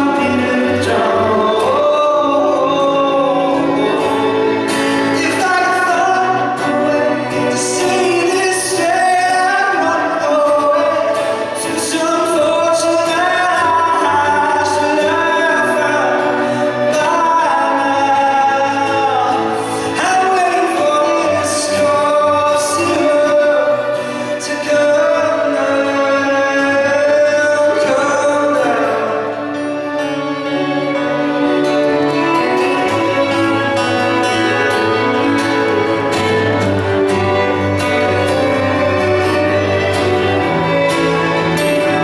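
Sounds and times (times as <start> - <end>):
acoustic accompaniment: 0.0 - 42.0
man singing in reverberant church: 0.0 - 42.0.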